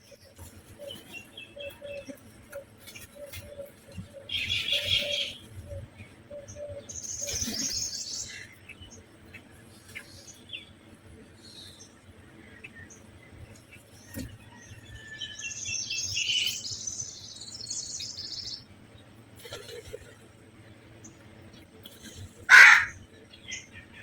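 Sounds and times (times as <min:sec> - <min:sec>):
crows calling harshly: 0:22.5 - 0:23.0.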